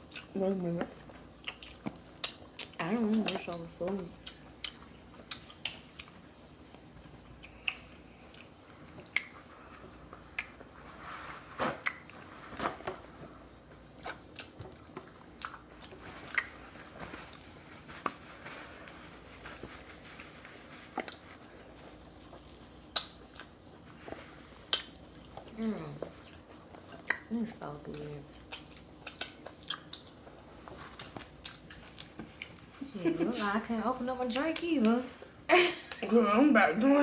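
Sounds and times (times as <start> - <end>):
chewing and biting: 1.0 - 9.4, 13.9 - 17.4, 19.3 - 21.3, 22.2 - 27.3, 27.9 - 32.7.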